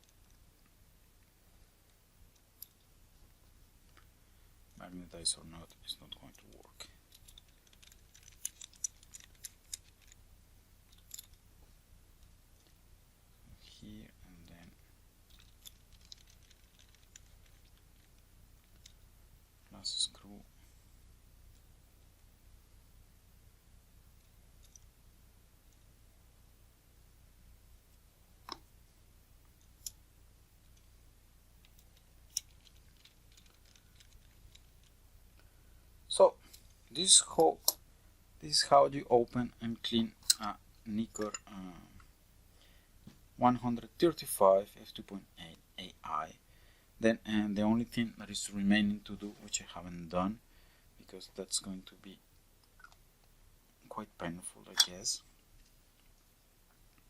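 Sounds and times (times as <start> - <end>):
screwdriver and tiny screws clicking: 7.1 - 10.2, 15.3 - 19.0.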